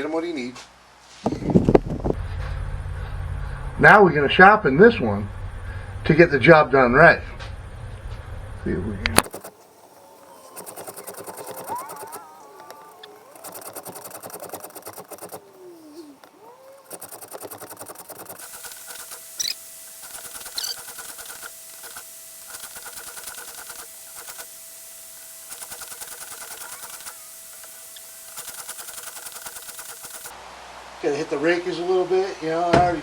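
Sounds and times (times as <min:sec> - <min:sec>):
file rasping on chainsaw chain: 0:09.2 - 0:24.5.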